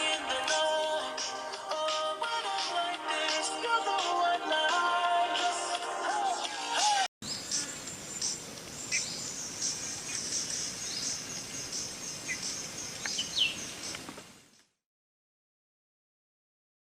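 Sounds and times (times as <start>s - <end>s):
birds chirping: 6.5s - 14.3s
outdoor background hiss: 7.2s - 14.8s.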